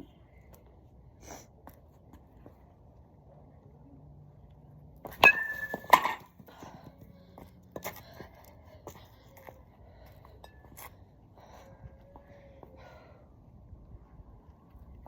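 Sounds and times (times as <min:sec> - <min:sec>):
metal bat cracking ball: 0:05.2 - 0:06.3.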